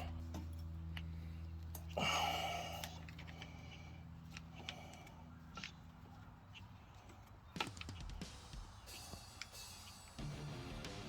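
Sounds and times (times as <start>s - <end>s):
low steady hum: 0.0s - 7.6s.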